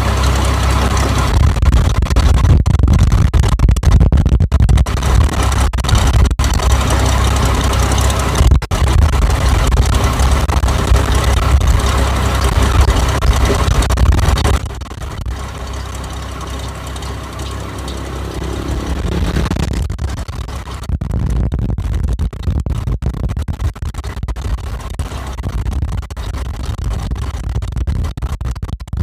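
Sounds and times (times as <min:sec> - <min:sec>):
combine harvester engine: 0:00.0 - 0:02.2, 0:05.0 - 0:19.9.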